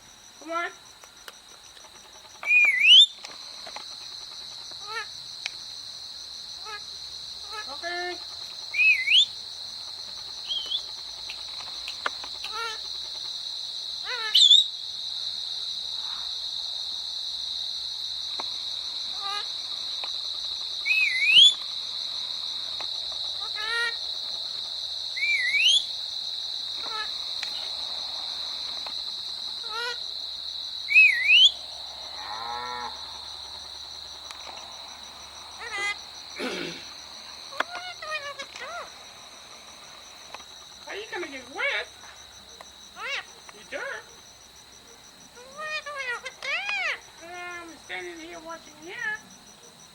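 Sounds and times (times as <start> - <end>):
parrot whistled calls: 2.4 - 3.1, 8.8 - 9.3, 14.3 - 14.7, 20.9 - 21.6, 25.2 - 25.9, 30.9 - 31.6
parrot warbling call: 20.8 - 21.6, 25.2 - 25.9, 30.9 - 31.6.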